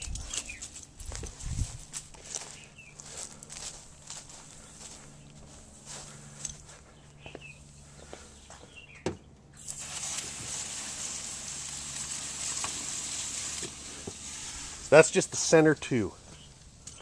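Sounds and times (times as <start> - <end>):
spray hissing: 9.6 - 15.6.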